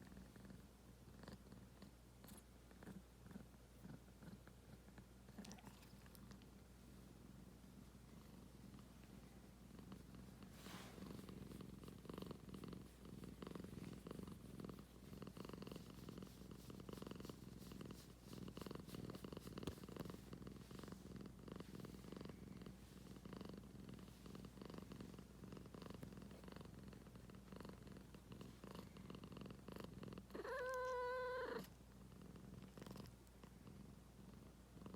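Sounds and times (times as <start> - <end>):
cat purring: 0.0 - 34.9
cat meowing: 30.4 - 31.7.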